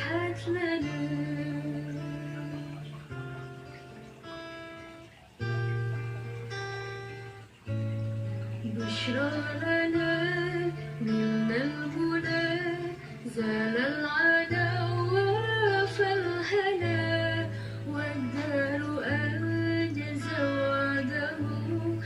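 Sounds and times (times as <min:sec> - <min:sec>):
person singing with sliding notes: 0:00.0 - 0:03.1, 0:08.5 - 0:22.0
guitar: 0:00.0 - 0:22.0.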